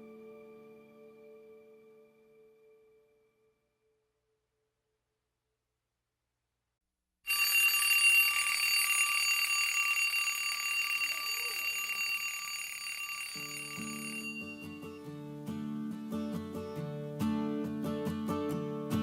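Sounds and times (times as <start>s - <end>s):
music: 0.0s - 4.0s, 13.4s - 19.0s
bell-like ringing tones: 7.3s - 15.1s.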